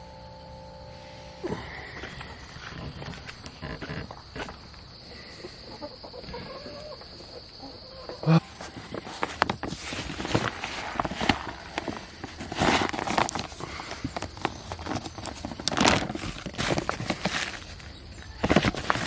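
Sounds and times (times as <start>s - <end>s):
rustling: 0.1s - 19.0s
clicks and crackles: 1.5s - 4.8s, 8.6s - 19.0s.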